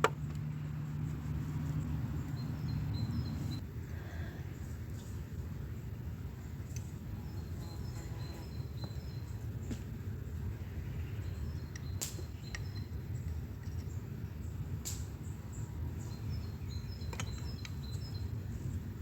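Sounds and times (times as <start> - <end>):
steady low rumble: 0.0 - 3.8
faint bird chirps: 1.7 - 4.3.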